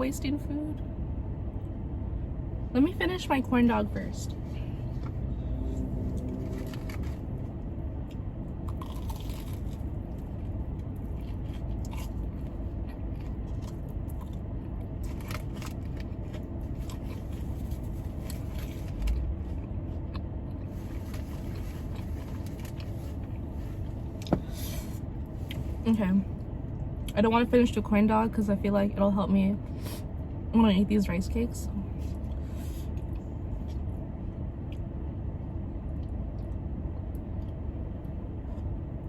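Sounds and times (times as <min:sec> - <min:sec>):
car air conditioning hum: 0:00.0 - 0:39.0
chewing with crisp crunches: 0:04.9 - 0:24.4.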